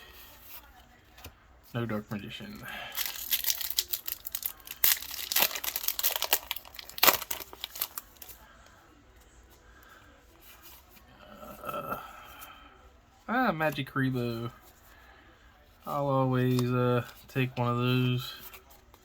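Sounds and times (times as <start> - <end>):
foil pack crinkling and tearing: 2.7 - 8.4.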